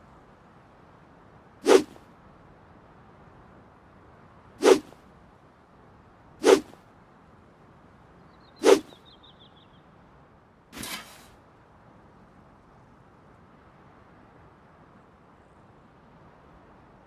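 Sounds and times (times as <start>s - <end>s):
sword whooshing through air: 1.6s - 2.0s, 4.6s - 5.0s, 6.4s - 6.8s, 8.6s - 8.9s, 10.8s - 11.3s.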